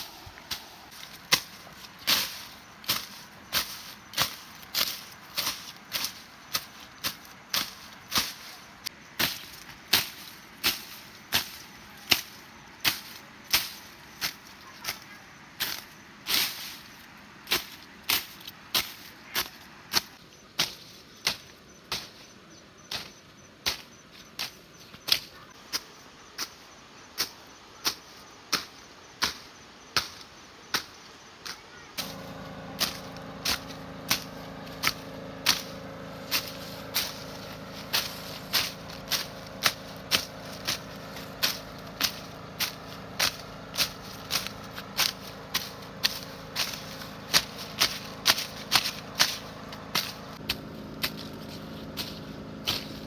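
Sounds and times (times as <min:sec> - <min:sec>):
steady low hum: 0:32.0 - 0:53.0.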